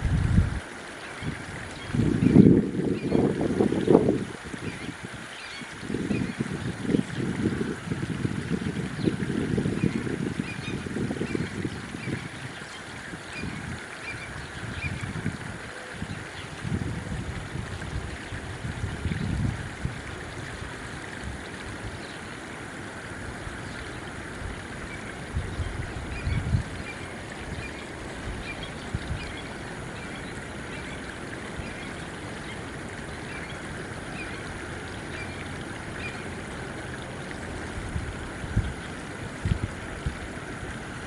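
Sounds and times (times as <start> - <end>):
wind buffeting microphone: 0.0 - 0.6, 1.2 - 22.0, 23.4 - 30.5, 37.6 - 41.0
stream rushing: 0.0 - 41.0.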